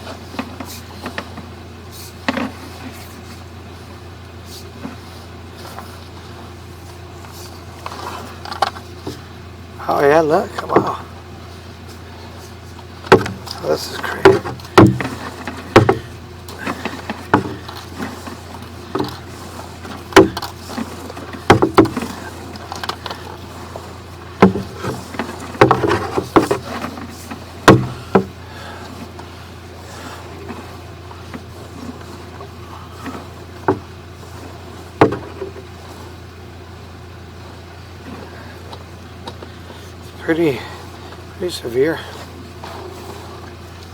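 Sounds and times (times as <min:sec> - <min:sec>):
low engine drone: 0:00.0 - 0:43.9
sharp knocks and clunks: 0:10.2 - 0:11.1, 0:12.7 - 0:36.1.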